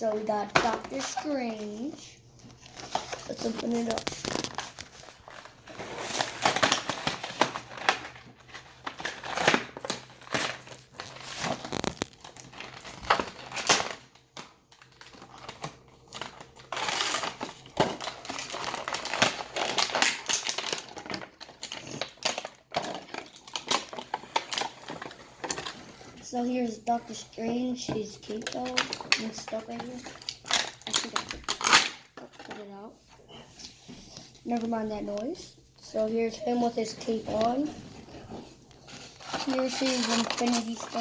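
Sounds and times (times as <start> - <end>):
packaging crinkling: 2.4 - 26.2, 28.3 - 32.6, 37.1 - 41.0.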